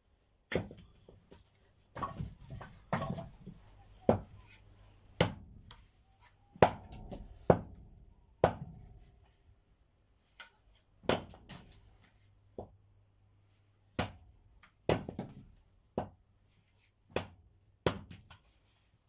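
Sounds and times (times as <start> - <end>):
axe chopping firewood: 0.5 - 1.0, 1.9 - 3.5, 5.2 - 5.8, 6.5 - 7.8, 8.4 - 9.0, 10.4 - 11.8, 13.9 - 16.2, 17.1 - 18.4.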